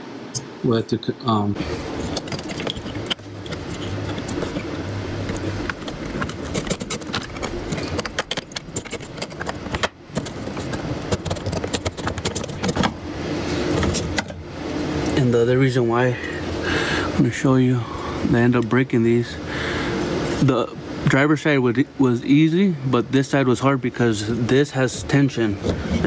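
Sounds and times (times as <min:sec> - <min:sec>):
steady background noise: 0:00.0 - 0:26.0
hard parts clicking and rattling: 0:01.9 - 0:13.0.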